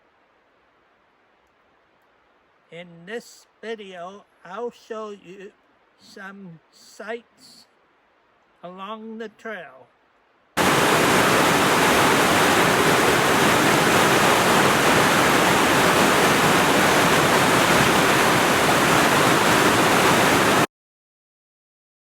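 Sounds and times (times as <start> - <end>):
fast-flowing creek water: 10.6 - 20.7.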